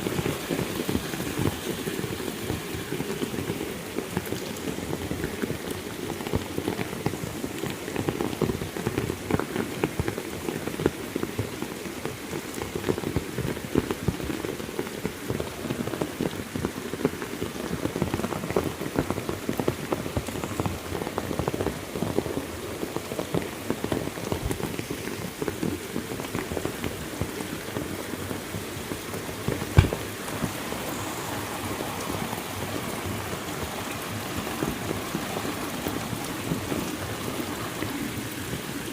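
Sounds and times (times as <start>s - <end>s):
heavy rain falling: 0.0s - 38.9s
sharp knock: 29.8s - 30.1s.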